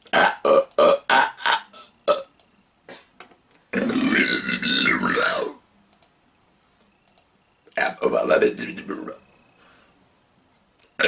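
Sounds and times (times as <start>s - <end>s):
man belching: 0.0s - 2.3s, 3.8s - 5.6s.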